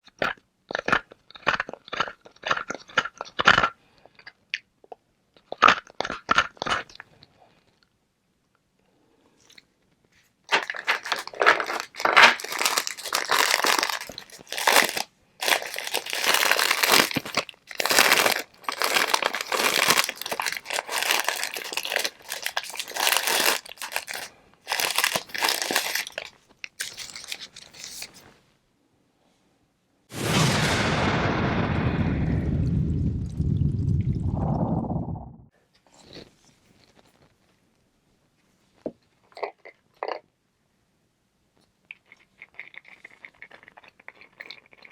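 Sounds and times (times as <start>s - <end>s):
ice being bitten and chewed: 0.0s - 7.8s, 10.5s - 28.2s, 35.9s - 37.3s, 41.9s - 44.9s.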